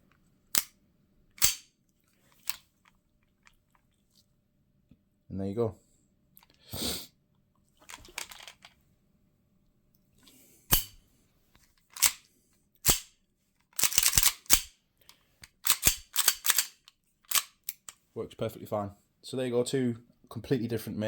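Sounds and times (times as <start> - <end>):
gun handling noise: 1.4 - 3.0, 7.8 - 8.8, 10.7 - 11.0, 11.6 - 13.1, 13.8 - 18.0
air pistol shots: 10.7 - 11.0.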